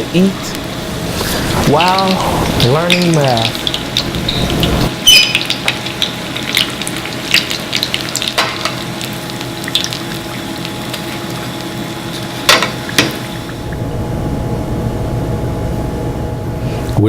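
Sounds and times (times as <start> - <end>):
food frying in hot grease: 0.0 - 13.8.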